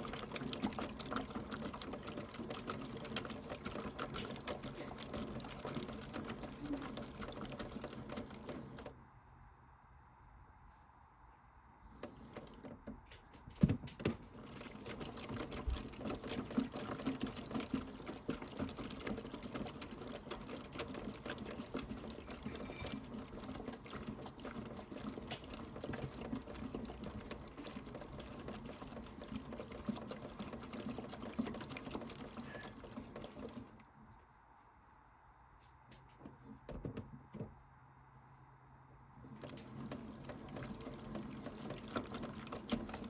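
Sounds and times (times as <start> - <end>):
toy washing machine whirring: 0.0 - 8.9, 14.0 - 33.8, 39.2 - 43.0
water pouring and sloshing: 0.0 - 8.9, 11.9 - 34.0, 39.2 - 43.0.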